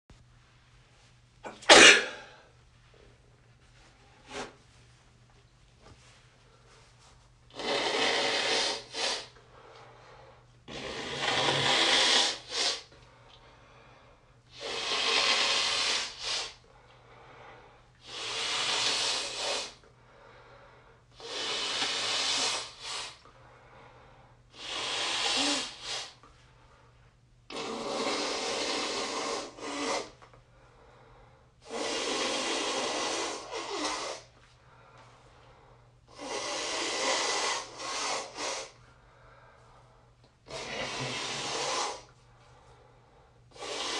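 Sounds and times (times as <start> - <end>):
person blowing nose: 1.5 - 2.3, 4.3 - 4.6, 7.5 - 9.4, 10.7 - 12.9, 14.5 - 16.6, 18.0 - 19.8, 21.1 - 23.2, 24.5 - 26.2, 27.5 - 30.2, 31.6 - 34.3, 36.1 - 38.8, 40.5 - 42.2, 43.5 - 43.9.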